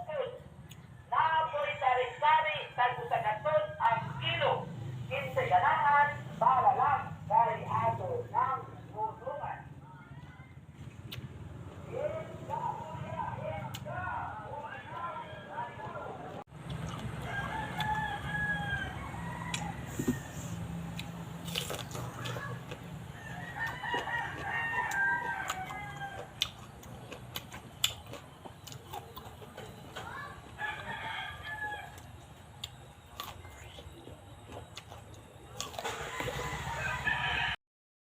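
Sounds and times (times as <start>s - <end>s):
rooster crowing: 14.1s - 16.4s, 17.1s - 21.0s, 23.1s - 26.5s, 30.1s - 32.2s, 35.6s - 37.6s.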